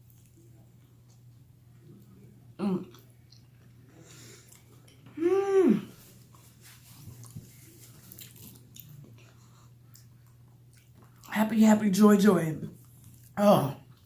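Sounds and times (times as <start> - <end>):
person chewing: 0.0 - 5.2, 5.8 - 11.3
person humming mmm: 2.6 - 3.0, 5.1 - 6.0.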